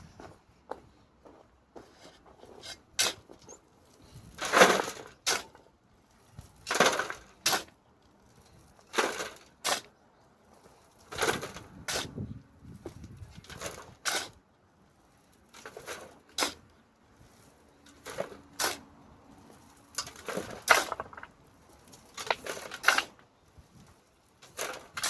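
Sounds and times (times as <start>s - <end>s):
shovel scraping into soil: 1.8s - 5.6s, 6.4s - 7.8s, 8.4s - 10.0s, 11.1s - 14.4s, 15.1s - 25.0s.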